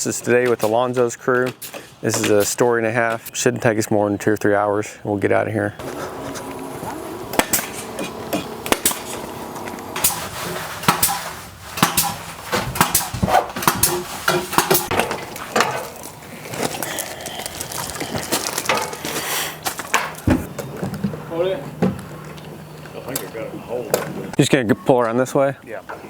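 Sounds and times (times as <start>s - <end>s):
sharp knocks and clanks: 5.8s - 16.0s, 18.7s - 21.2s.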